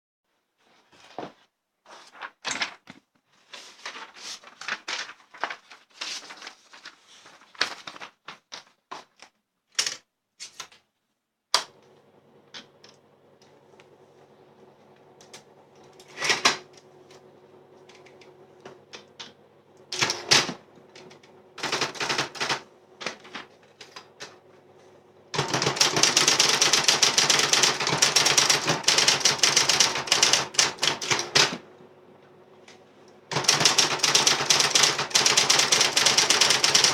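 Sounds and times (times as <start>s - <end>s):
typewriter motor hum: 11.6s - 36.9s
typewriter mechanical clicks: 18.9s - 24.3s, 25.4s - 31.6s, 33.3s - 36.9s
typewriter key strikes: 20.0s - 20.6s, 25.4s - 31.6s, 33.3s - 36.9s.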